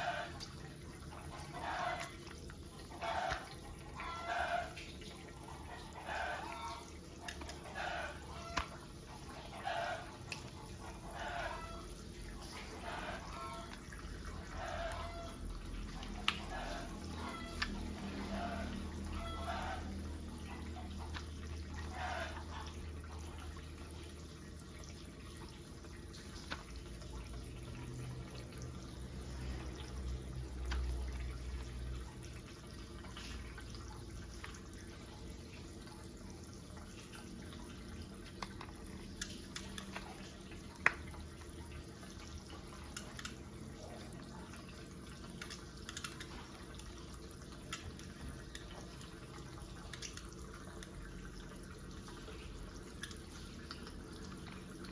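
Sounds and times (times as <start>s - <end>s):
plastic toy pieces clicking: 45.4s - 46.3s.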